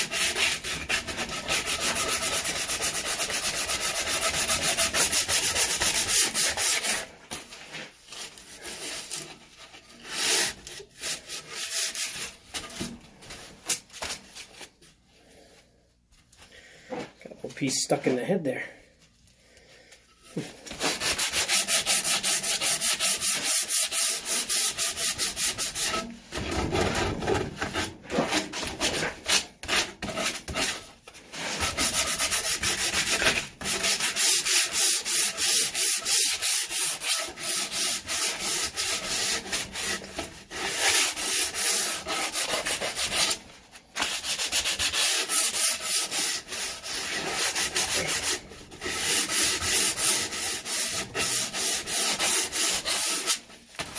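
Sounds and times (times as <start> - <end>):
sandpaper scraping on wood: 0.0 - 7.1, 20.7 - 26.0, 27.8 - 43.4, 44.0 - 53.5.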